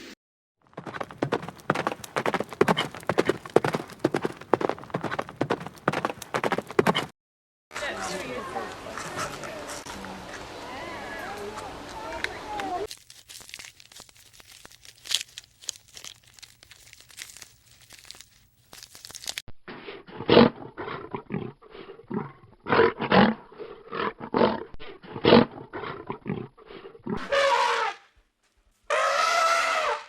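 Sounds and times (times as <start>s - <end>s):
faint crackling rustle: 12.9s - 19.4s
tiger growling: 20.0s - 27.2s.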